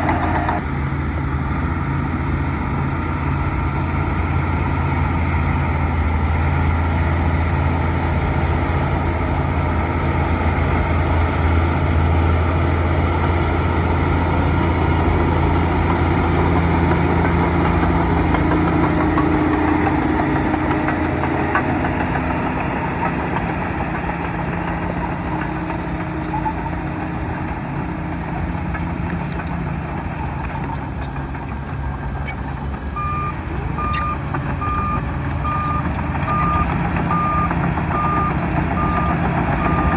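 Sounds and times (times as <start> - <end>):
diesel engine droning: 0.0 - 39.9
reversing alarm beeping: 26.2 - 26.8, 33.0 - 39.9.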